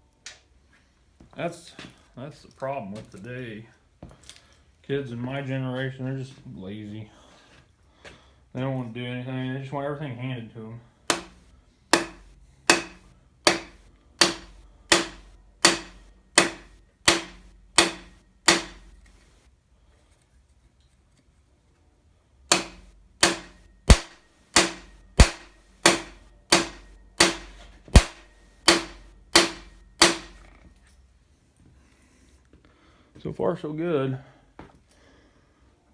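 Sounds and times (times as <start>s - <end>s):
hammer blows on metal: 11.1s - 18.9s, 22.5s - 30.4s.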